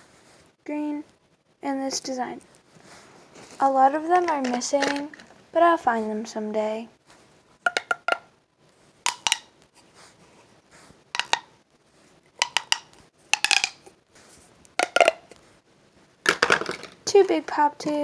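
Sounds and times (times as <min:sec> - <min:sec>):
plastic fidget toys clicking: 0:04.2 - 0:05.4, 0:07.6 - 0:08.3, 0:09.1 - 0:09.5, 0:11.2 - 0:11.5, 0:12.4 - 0:13.9, 0:14.8 - 0:15.4, 0:16.3 - 0:18.0.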